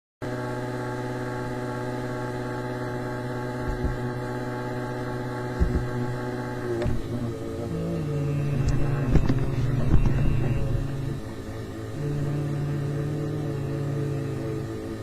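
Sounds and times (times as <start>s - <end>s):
electrical hum: 0.2s - 15.0s
soft low thumps: 3.6s - 4.2s, 5.5s - 6.2s, 8.4s - 11.4s.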